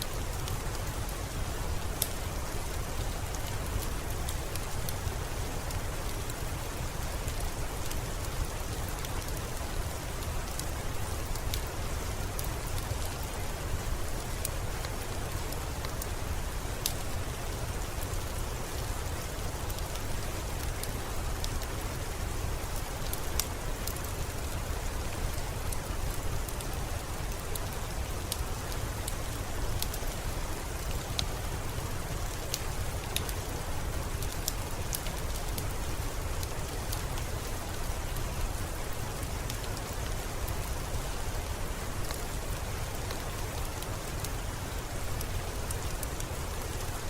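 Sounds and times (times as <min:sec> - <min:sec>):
steady rain hiss: 0:00.0 - 0:47.0
raindrops ticking: 0:22.6 - 0:47.0.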